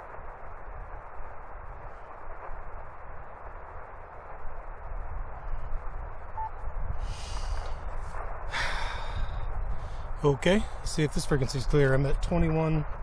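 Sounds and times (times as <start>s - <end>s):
radio band-noise hiss: 0.0s - 13.0s
wind rumbling on microphone: 0.0s - 13.0s
short beep: 6.3s - 6.6s.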